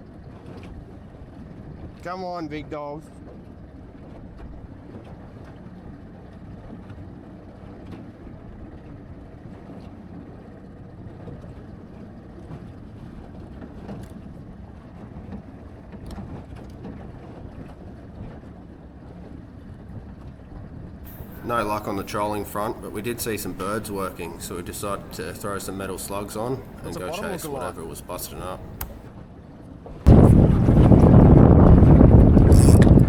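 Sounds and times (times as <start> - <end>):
wind on microphone: 21.1 - 27.4, 30.1 - 33.0
boat motor running: 21.1 - 29.1, 30.1 - 33.0
water rushing: 21.1 - 29.1.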